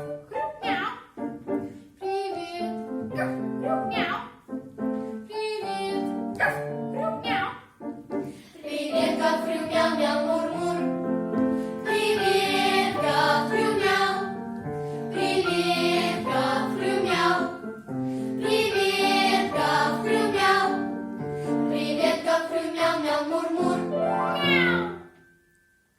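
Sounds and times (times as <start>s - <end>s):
vocal ensemble singing: 8.4s - 10.9s, 11.8s - 14.4s, 15.0s - 17.7s, 18.4s - 20.9s, 21.6s - 24.2s.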